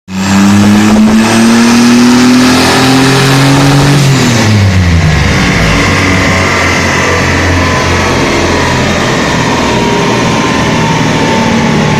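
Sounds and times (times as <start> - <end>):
engine revving under load: 0.1 - 11.9.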